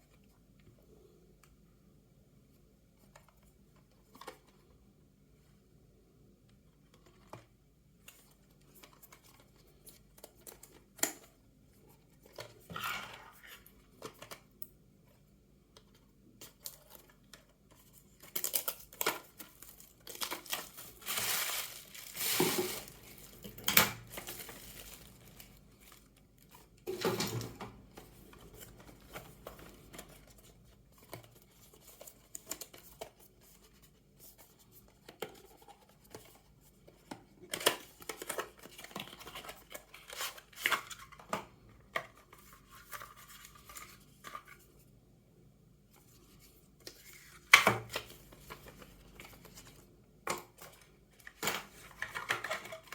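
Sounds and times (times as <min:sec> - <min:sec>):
packaging crinkling and tearing: 0:18.1 - 0:26.6.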